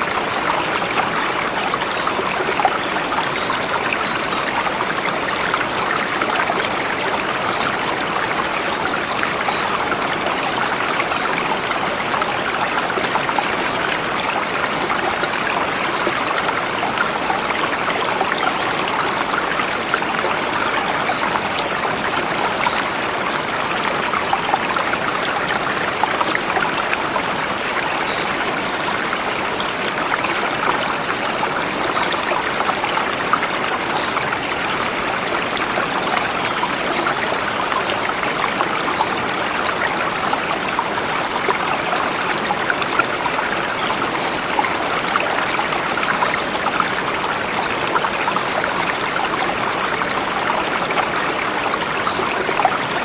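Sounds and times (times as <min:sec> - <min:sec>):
river flowing over rocks: 0:00.0 - 0:53.0.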